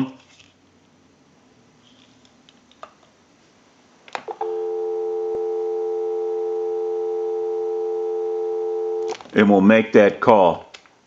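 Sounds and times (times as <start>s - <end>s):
telephone dial tone: 4.3s - 9.2s.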